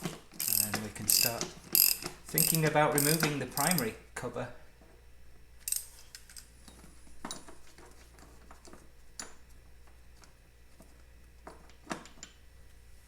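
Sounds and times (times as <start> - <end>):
metal tools clinking: 0.4 - 3.9.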